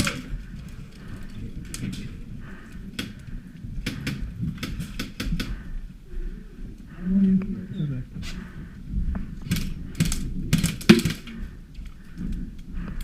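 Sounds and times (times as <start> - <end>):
low rumble of movement: 0.0 - 13.0
sharp clicks and knocks: 2.9 - 5.7.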